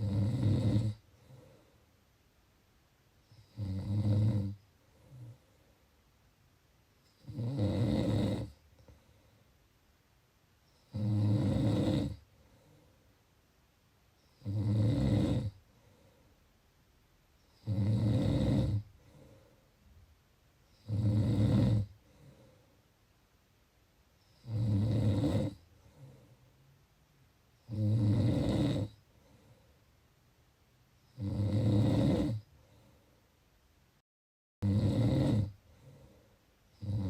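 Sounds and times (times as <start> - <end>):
snoring: 0.0 - 1.5, 3.3 - 5.4, 7.1 - 8.6, 10.8 - 12.3, 14.4 - 15.6, 17.5 - 19.2, 20.7 - 22.3, 24.3 - 26.3, 27.6 - 29.0, 31.1 - 32.5, 34.6 - 37.0
quiet breathing: 0.0 - 2.2, 3.1 - 6.2, 7.0 - 9.8, 10.6 - 13.4, 14.1 - 16.7, 17.4 - 23.1, 24.0 - 30.3, 30.9 - 33.6, 35.2 - 37.0.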